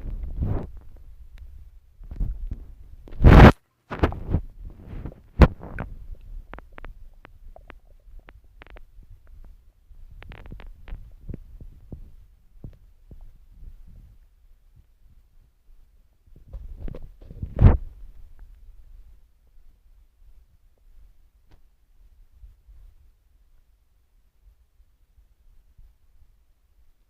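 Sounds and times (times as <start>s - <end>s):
stomach growling gurgles: 2.0s - 14.2s, 16.3s - 18.0s
short pops and clicks: 5.4s - 9.5s.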